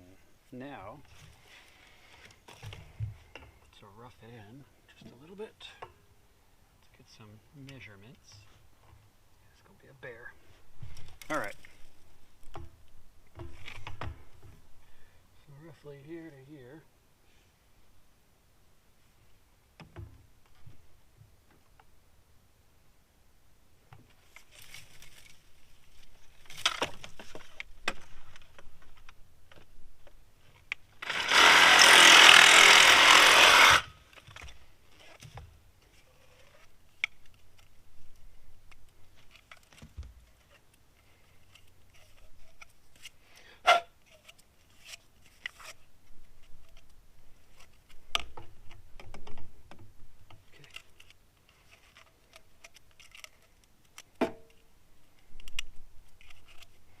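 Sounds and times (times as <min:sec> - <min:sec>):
power saw cutting pipe: 0:31.0 - 0:34.0.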